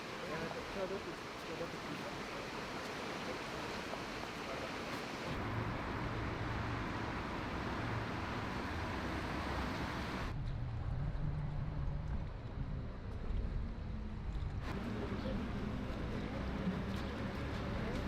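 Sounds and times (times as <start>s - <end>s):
rushing floodwater: 0.0s - 10.3s, 14.7s - 18.0s.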